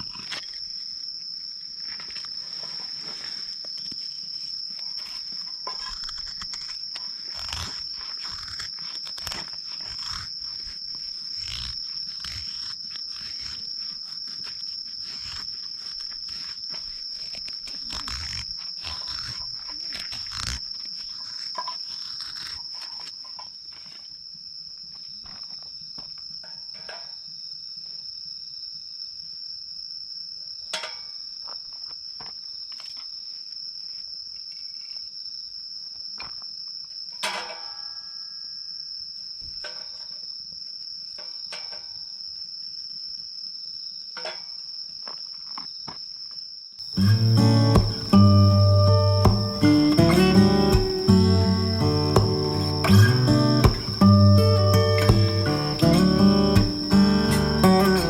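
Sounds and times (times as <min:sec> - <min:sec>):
crickets trilling: 0:00.0 - 0:58.0
knocks and crunching handling noises: 0:01.8 - 0:24.2, 0:46.9 - 0:58.0.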